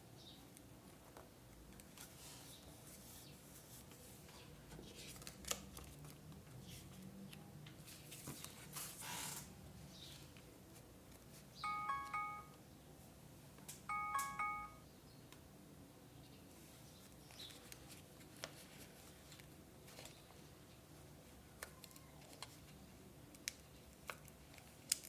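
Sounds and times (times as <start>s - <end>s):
paper handling: 1.8s - 7.0s, 17.5s - 20.4s
short chime: 11.6s - 12.6s, 13.9s - 14.8s.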